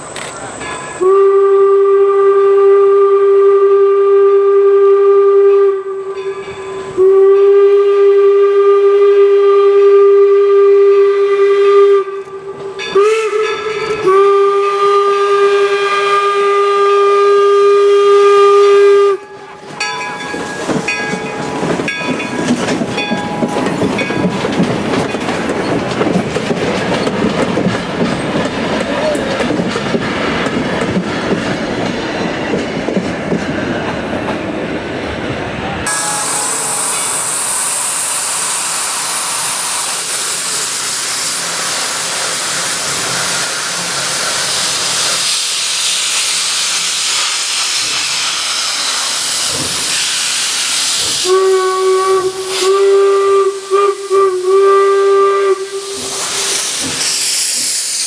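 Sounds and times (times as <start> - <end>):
train rumbling past: 0.0 - 58.0
steam whistle blasts: 1.0 - 19.6, 35.8 - 44.0, 45.1 - 57.9
wheels clattering over rail joints: 19.3 - 34.4.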